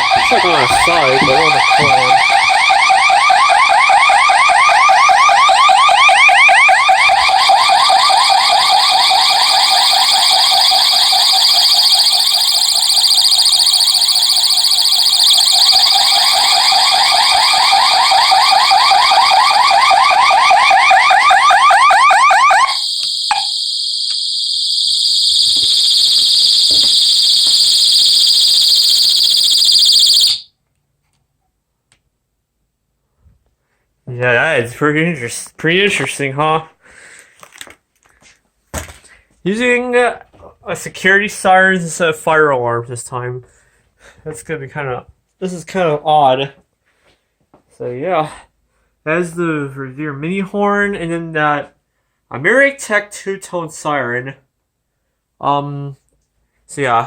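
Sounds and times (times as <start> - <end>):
fast-warbling siren: 0.0 - 30.5
steady high-pitched siren tone: 0.0 - 30.5.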